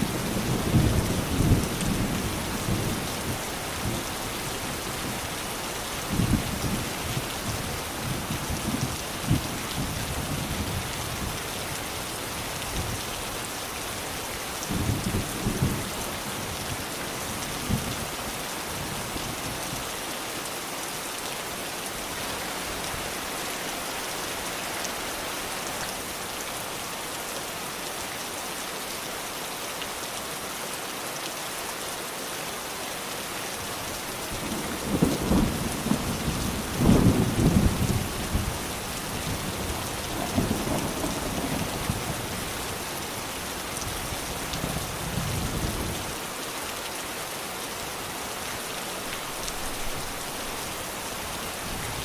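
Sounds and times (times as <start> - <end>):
steady rain: 0.0 - 52.0
thunder rumbles: 34.4 - 38.6.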